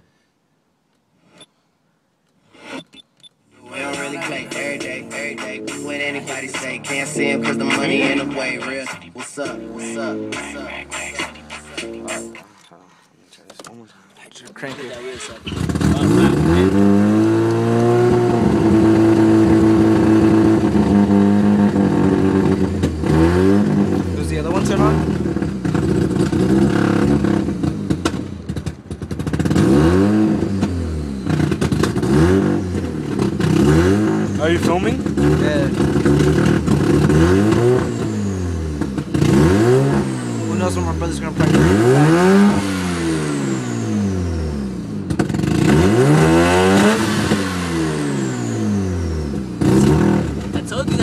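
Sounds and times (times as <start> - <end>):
person talking: 7.4 - 8.7, 10.4 - 16.8, 50.5 - 51.0
rotary engine revving: 14.6 - 51.0.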